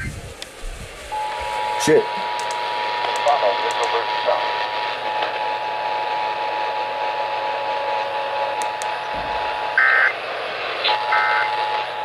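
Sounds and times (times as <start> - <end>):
radio static hiss: 0.0 - 12.0
faint clicks: 2.4 - 4.0.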